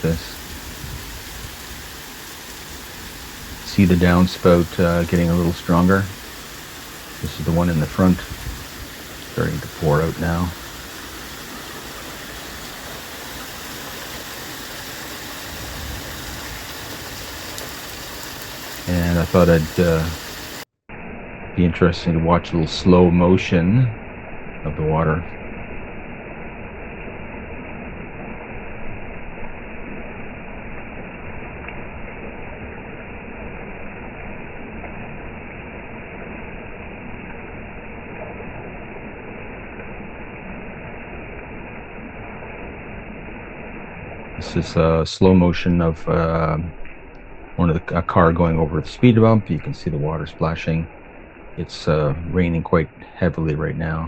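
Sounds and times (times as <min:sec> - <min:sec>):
heavy rain: 0:00.0 - 0:20.7, 0:21.5 - 0:54.0
water pouring from downspout: 0:00.0 - 0:20.7, 0:44.3 - 0:54.0.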